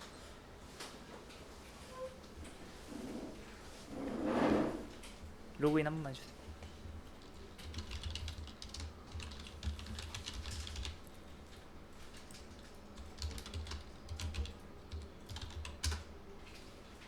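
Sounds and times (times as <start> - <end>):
computer keyboard typing: 6.6 - 11.6, 12.3 - 16.1.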